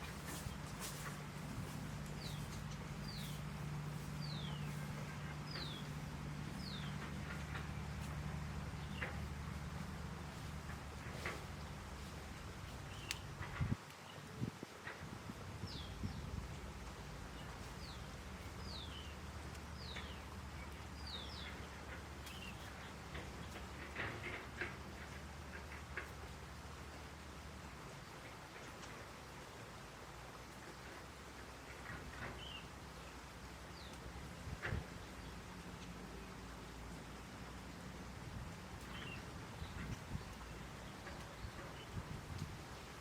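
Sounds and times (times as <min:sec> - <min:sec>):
flowing water rushing: 0:00.0 - 0:14.0
low steady rumble: 0:00.0 - 0:43.0.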